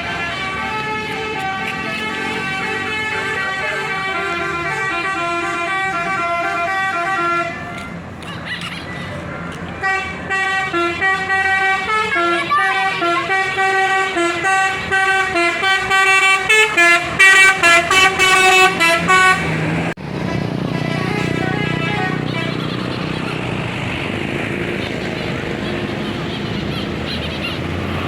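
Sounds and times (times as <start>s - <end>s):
musical air horn playing a tune: 0.0s - 7.7s, 9.8s - 19.6s, 20.2s - 23.4s
traffic rushing noise: 0.0s - 28.0s.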